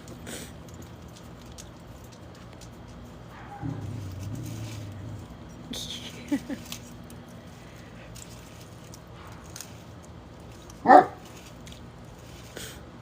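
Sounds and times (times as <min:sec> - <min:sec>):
dog yipping: 0:10.8 - 0:11.2.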